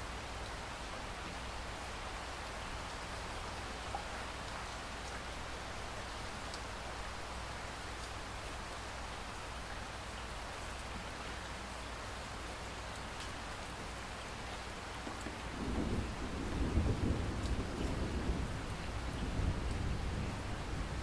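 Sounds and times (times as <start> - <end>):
steady rain falling: 0.0 - 21.0
rain drop ticks: 6.5 - 6.7, 8.0 - 8.2, 17.3 - 19.9
thunder rumbling: 15.5 - 21.0.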